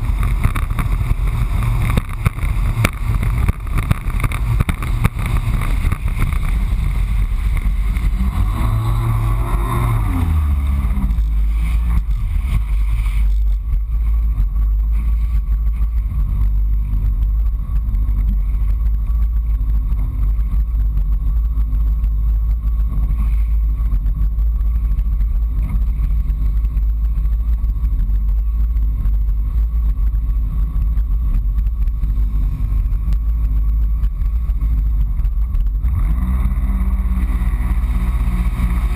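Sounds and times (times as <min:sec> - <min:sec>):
jet ski engine running: 0:00.0 - 0:38.9.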